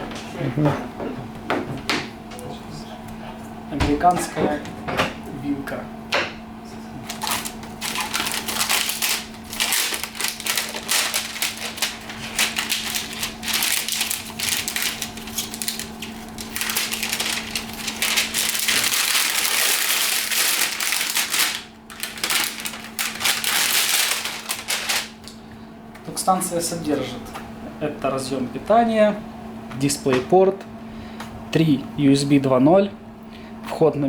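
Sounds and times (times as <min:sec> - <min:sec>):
plastic packaging crinkling: 0:07.0 - 0:25.4.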